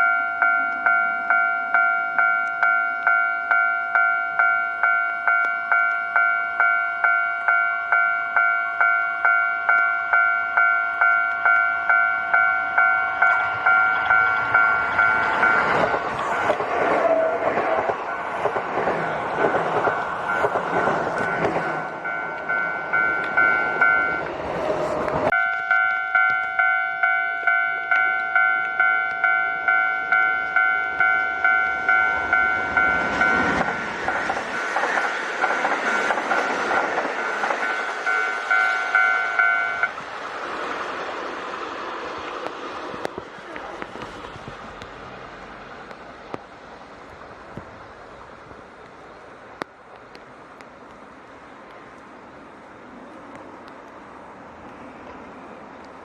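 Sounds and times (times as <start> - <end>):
level crossing bell ringing: 0.0 - 15.7, 21.2 - 24.3, 25.3 - 33.6, 37.7 - 39.9
electric train passing: 0.0 - 56.0.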